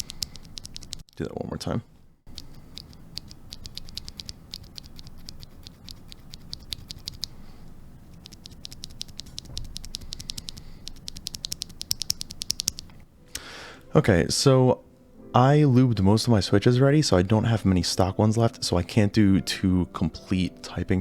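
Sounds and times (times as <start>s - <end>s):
keyboard switches clicking: 0.0s - 1.1s, 2.3s - 7.3s, 8.2s - 13.0s.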